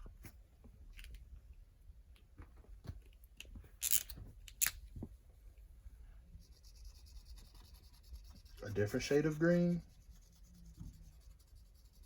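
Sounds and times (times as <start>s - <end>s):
pen scratching on paper: 6.4s - 12.0s.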